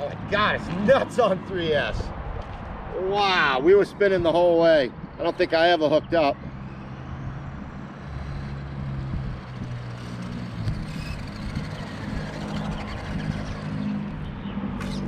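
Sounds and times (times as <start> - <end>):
motor vehicle engine humming: 5.0 - 15.0.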